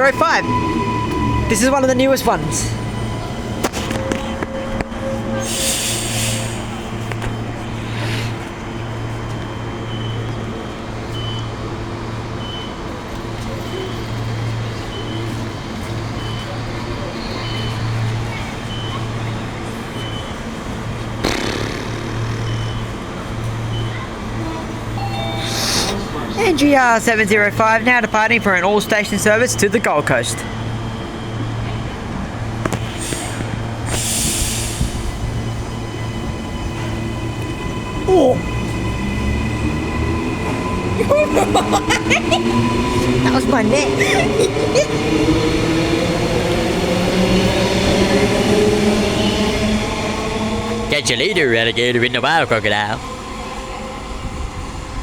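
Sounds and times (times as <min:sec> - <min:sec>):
electric train hum: 0:00.0 - 0:55.0
air hiss: 0:33.0 - 0:35.2.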